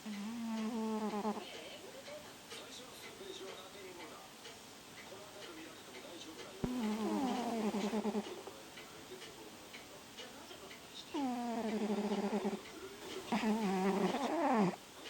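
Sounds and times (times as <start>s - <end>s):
cat snoring: 0.0s - 1.4s, 6.7s - 8.4s, 11.1s - 14.8s.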